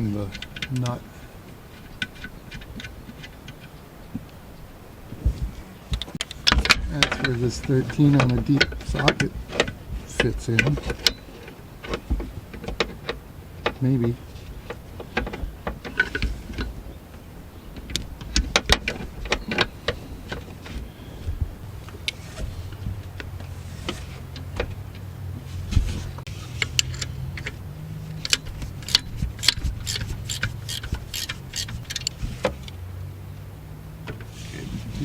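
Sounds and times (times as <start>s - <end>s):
hand tools clicking on metal: 6.0s - 16.8s, 26.5s - 32.8s.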